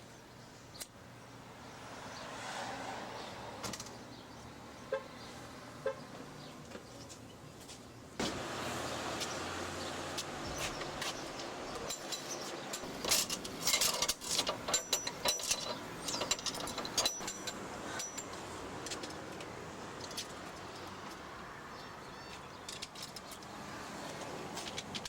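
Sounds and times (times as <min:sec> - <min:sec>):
coins clinking: 0:11.8 - 0:19.1.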